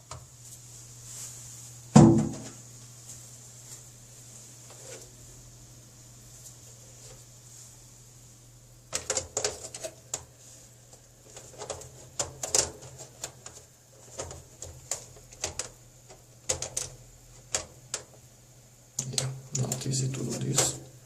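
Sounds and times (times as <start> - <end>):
steady low hum: 0.0 - 21.0
computer case parts clicking: 8.9 - 10.3, 11.0 - 18.2, 19.0 - 20.8.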